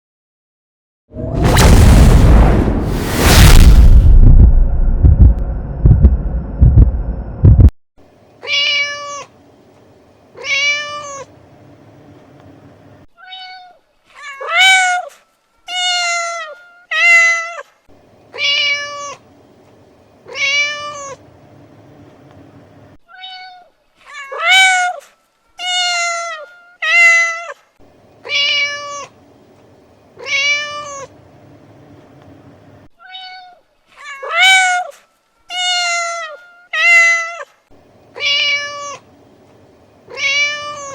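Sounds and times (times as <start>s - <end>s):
loud low rumble: 1.1s - 7.7s
cat meowing: 8.4s - 9.3s, 10.4s - 11.3s, 13.2s - 15.1s, 15.7s - 17.6s, 20.3s - 21.2s, 23.1s - 25.0s, 25.6s - 27.6s, 28.2s - 29.2s, 30.2s - 31.1s, 33.0s - 37.5s, 38.2s - 39.1s, 40.1s - 40.9s
cat chirp: 38.2s - 39.0s, 40.1s - 40.9s.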